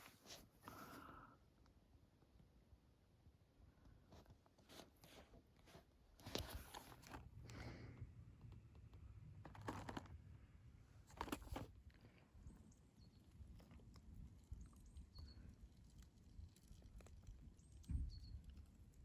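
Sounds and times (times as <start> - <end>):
rustling and crunching handling noises: 4.1 - 7.7, 9.4 - 10.2, 11.0 - 19.0.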